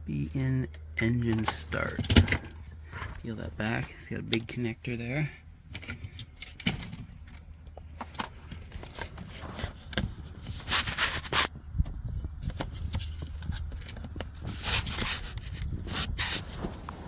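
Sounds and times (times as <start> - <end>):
low steady hum: 0.0 - 17.0
scraping rustle: 5.8 - 11.6, 12.4 - 17.0.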